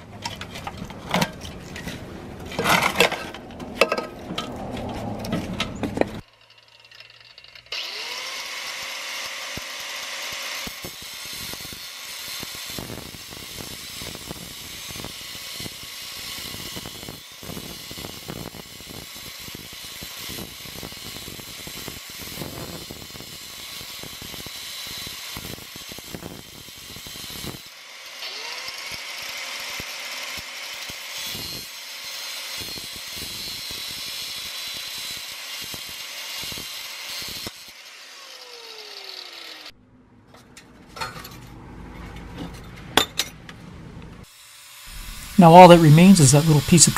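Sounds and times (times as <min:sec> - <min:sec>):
grinder cutting metal pipe: 0:06.2 - 0:39.8, 0:44.2 - 0:45.7
angle grinder whining: 0:06.4 - 0:13.2, 0:36.2 - 0:39.8, 0:44.4 - 0:45.4.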